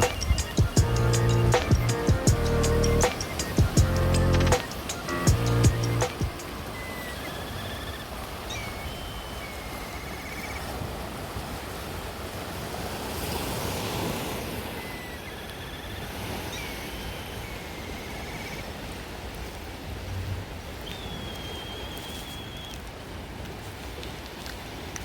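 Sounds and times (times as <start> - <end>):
high wavering whistle-like notes: 0.0 - 10.4
wind and surf rushing: 0.0 - 25.0.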